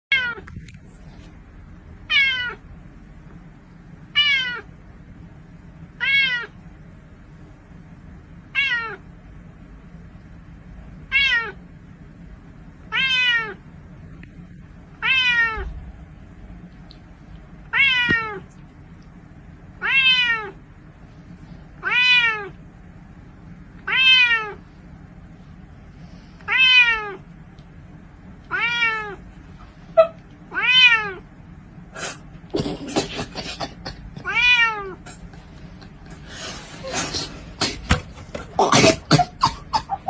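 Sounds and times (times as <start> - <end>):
cat meowing: 0.1 - 0.5, 2.1 - 2.6, 4.2 - 4.7, 6.0 - 6.6, 8.5 - 9.0, 11.1 - 11.6, 12.9 - 13.6, 15.0 - 15.8, 17.7 - 18.5, 19.8 - 20.6, 21.8 - 22.6, 23.8 - 24.6, 26.5 - 27.2, 28.5 - 29.2, 30.0 - 31.2, 34.2 - 35.0.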